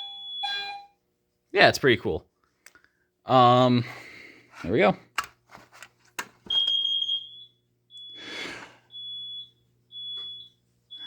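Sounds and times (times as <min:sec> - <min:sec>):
fire alarm panel beeping: 0:00.0 - 0:01.0, 0:06.5 - 0:08.3, 0:08.9 - 0:11.0.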